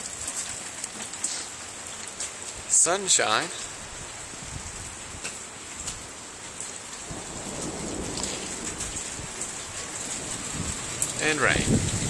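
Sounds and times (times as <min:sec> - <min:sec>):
steady rain: 0:00.0 - 0:12.0
low rumble of thunder: 0:07.0 - 0:12.0.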